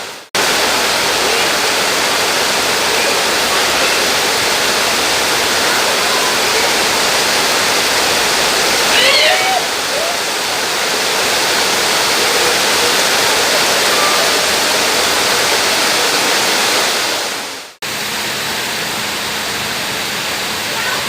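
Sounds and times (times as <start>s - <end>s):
heavy rain pouring: 0.0s - 21.0s.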